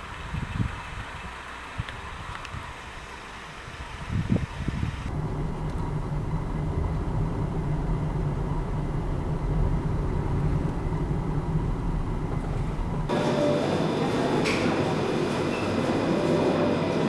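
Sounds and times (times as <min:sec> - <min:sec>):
low rumble of moving vehicle: 0:00.0 - 0:13.2.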